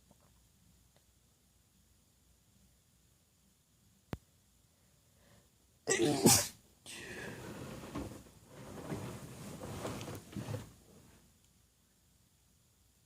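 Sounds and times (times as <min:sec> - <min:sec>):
woman's stifled sneeze: 0:05.9 - 0:06.6.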